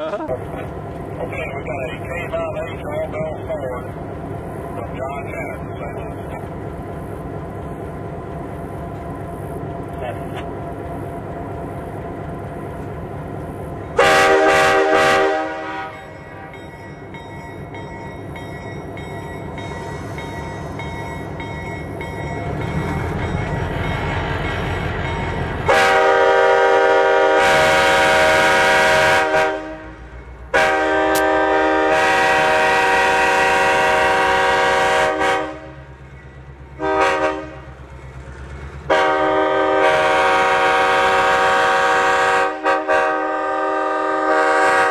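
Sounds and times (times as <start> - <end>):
diesel engine rumble: 0.0 - 28.9
locomotive air horn: 14.0 - 16.5, 25.7 - 35.8, 36.8 - 37.7, 38.9 - 44.9.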